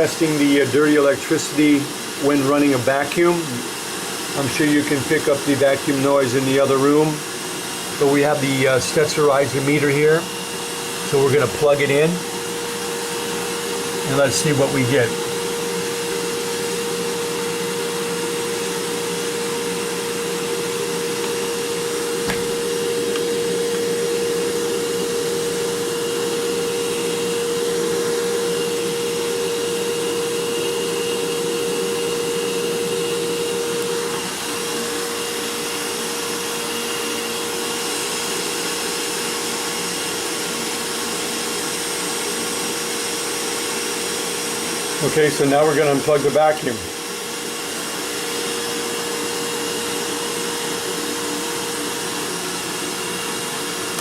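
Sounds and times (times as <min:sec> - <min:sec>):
vacuum cleaner running: 0:00.0 - 0:54.0.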